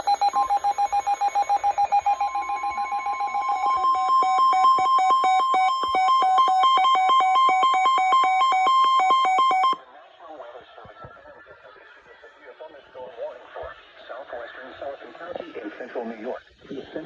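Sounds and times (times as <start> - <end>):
alternating high and low beeps: 0.0 - 9.8
fast electronic beeping: 0.0 - 9.8.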